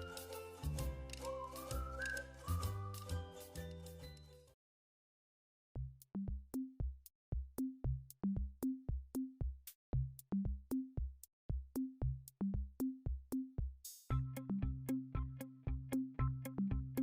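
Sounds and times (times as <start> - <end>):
electronic bass drum beat: 5.8 - 14.2.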